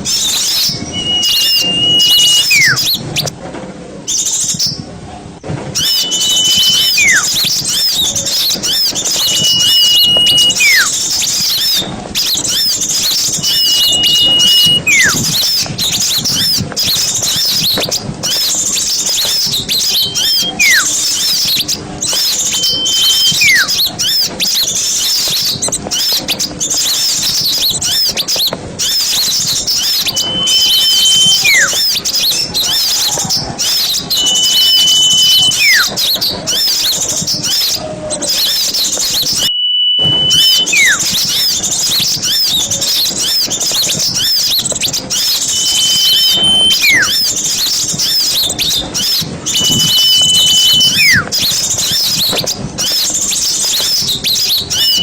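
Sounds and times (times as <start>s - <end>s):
whistled bird call: 0.0s - 3.3s, 5.8s - 55.0s
songbirds twittering: 0.0s - 3.4s, 4.0s - 5.0s, 5.6s - 55.0s.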